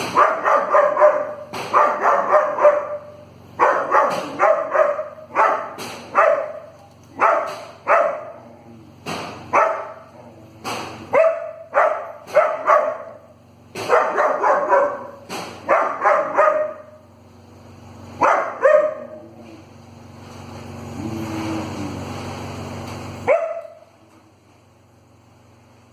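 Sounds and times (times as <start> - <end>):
dog barking: 0.0 - 8.5, 9.5 - 10.3, 11.1 - 17.0, 18.2 - 19.2, 23.2 - 23.9.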